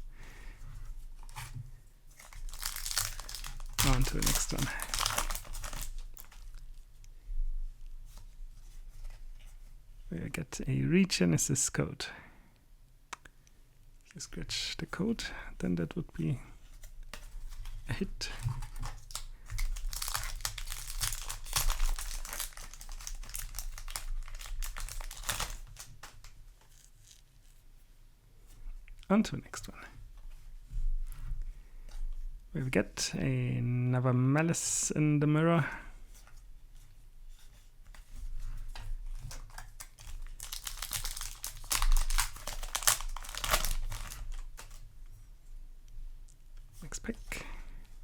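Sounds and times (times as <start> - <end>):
foil wrapper tearing and crinkling: 2.1 - 6.6, 17.6 - 27.2, 39.2 - 44.8.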